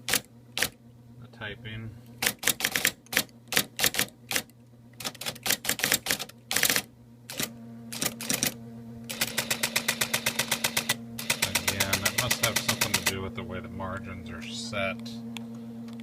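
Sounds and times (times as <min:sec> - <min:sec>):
typewriter motor humming: 0:00.0 - 0:00.8, 0:02.2 - 0:13.3
electric typewriter strikes: 0:02.2 - 0:13.2.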